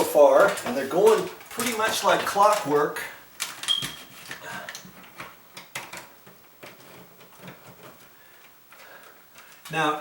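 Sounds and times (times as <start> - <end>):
plastic clicks and knocks: 3.4 - 9.8.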